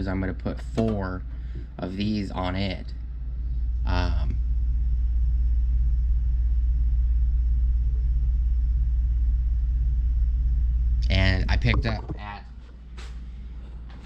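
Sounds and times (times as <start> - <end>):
machine humming: 0.0 - 13.8.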